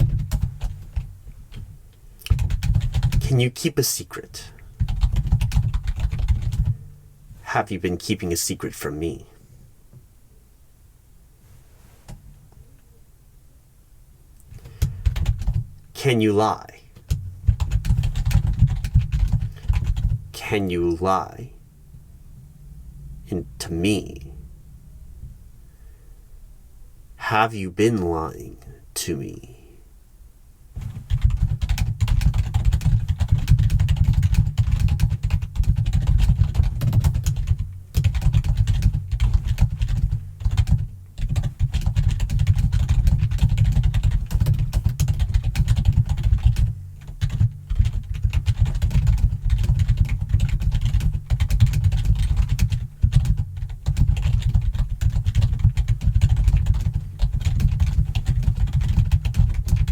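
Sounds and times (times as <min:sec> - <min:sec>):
fast typing on keyboard: 0:00.0 - 0:01.6, 0:02.2 - 0:03.2, 0:04.8 - 0:06.8, 0:14.6 - 0:15.6, 0:17.0 - 0:20.2, 0:30.8 - 0:59.9.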